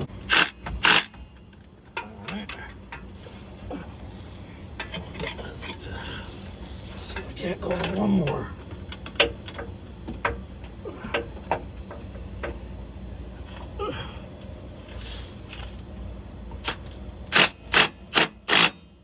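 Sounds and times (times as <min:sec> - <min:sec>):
ratchet wrench clicking: 0:00.2 - 0:01.2, 0:16.7 - 0:18.8.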